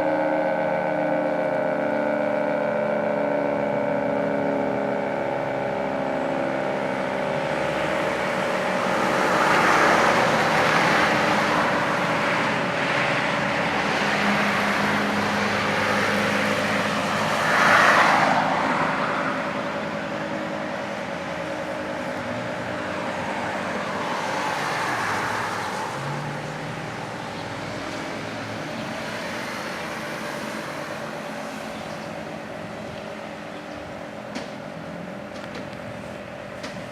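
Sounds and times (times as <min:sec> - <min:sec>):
two-tone siren winding down: 0:00.0 - 0:06.7
cars passing by: 0:00.0 - 0:36.9.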